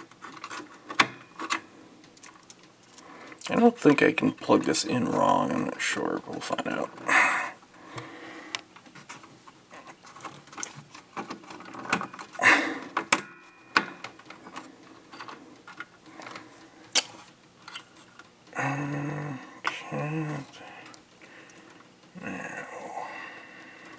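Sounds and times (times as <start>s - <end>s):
wire connectors clicking: 9.9s - 18.3s.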